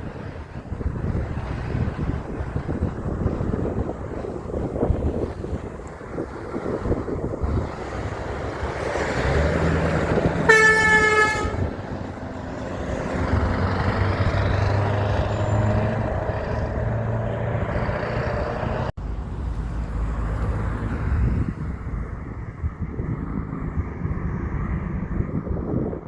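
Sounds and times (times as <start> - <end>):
trucks passing on road: 0.0 - 26.0
truck horn blast: 9.6 - 16.2.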